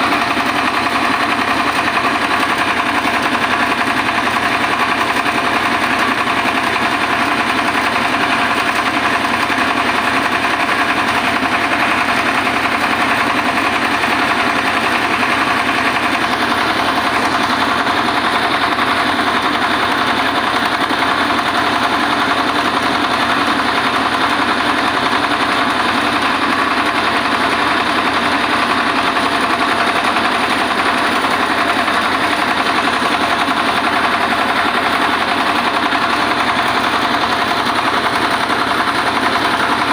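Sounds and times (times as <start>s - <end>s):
rice mill engine running: 0.0s - 39.9s.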